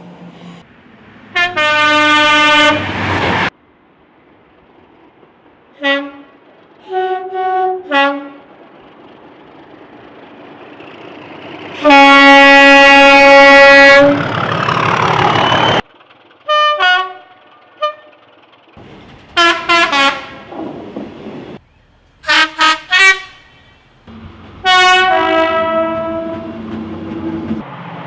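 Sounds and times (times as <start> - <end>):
passing train rushing: 0.0 - 28.0
train horn blasts: 1.3 - 3.0, 5.8 - 8.4, 11.8 - 14.3, 16.5 - 18.2, 19.4 - 20.5, 22.2 - 23.6, 24.6 - 26.7.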